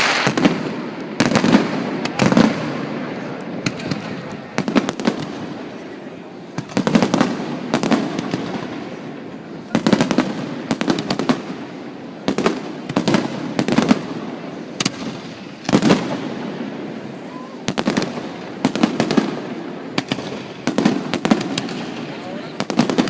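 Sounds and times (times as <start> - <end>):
fireworks cracks and bangs: 0.0 - 23.0.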